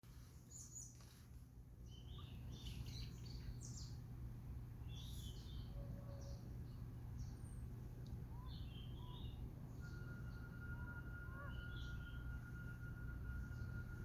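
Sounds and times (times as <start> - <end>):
low background rumble: 0.1 - 14.0
high bird chirps: 8.3 - 14.0.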